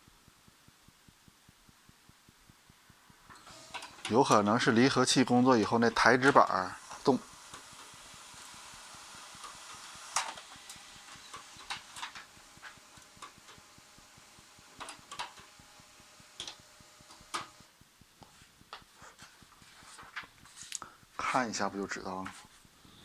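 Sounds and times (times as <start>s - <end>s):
faint printer hum: 0.0s - 23.0s
printer clicking and knocking: 3.3s - 4.5s, 9.2s - 15.8s, 16.4s - 17.6s.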